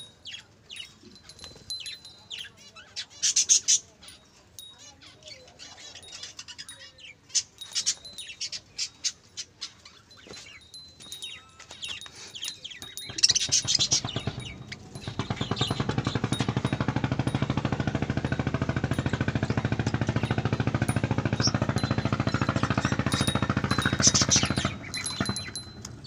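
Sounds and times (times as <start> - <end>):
budgerigars chirping: 12.0 - 16.8, 21.4 - 25.6
fast pulsing drone: 13.7 - 26.0.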